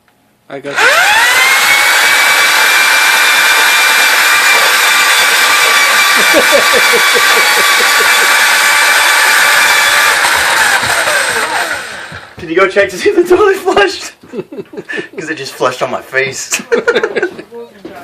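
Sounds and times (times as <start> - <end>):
power tool motor whining: 0.7 - 12.4.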